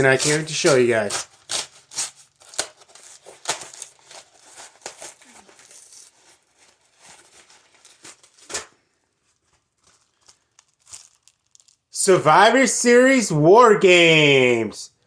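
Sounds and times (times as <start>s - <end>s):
packaging tearing and crinkling: 0.0s - 11.9s.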